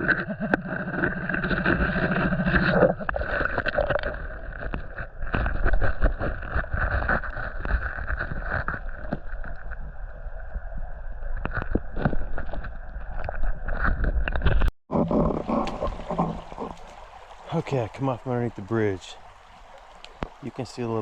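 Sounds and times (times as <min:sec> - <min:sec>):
water splashing from wading: 0:14.9 - 0:21.0.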